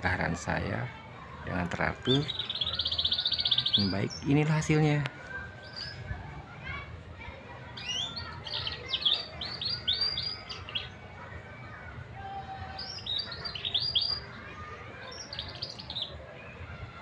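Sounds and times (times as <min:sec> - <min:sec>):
canary singing high chirps: 0:01.9 - 0:06.1, 0:07.7 - 0:11.8, 0:12.7 - 0:16.2.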